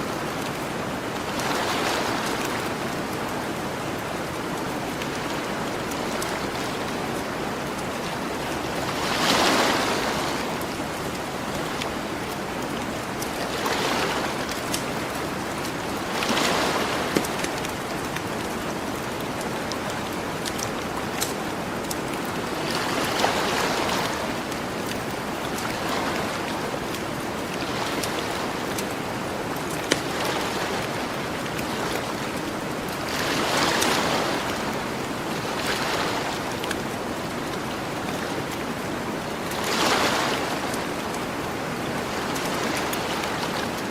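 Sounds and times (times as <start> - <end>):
ocean waves washing onto beach: 0.0 - 43.9
campfire crackling: 17.0 - 22.6.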